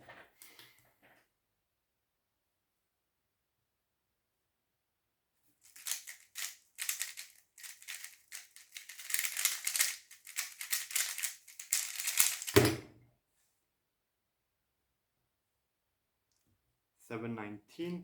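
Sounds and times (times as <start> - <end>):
puzzle cube rapid clicking: 5.7 - 12.6.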